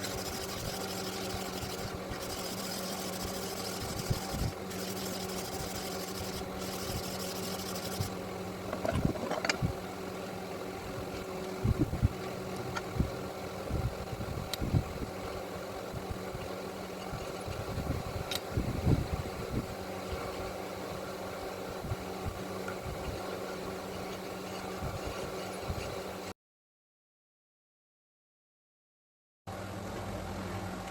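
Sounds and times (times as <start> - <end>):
electric motor humming: 0.0 - 9.8.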